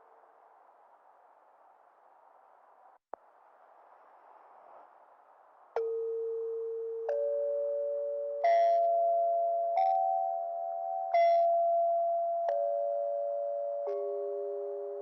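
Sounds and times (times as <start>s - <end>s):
faint hiss: 0.0s - 6.6s.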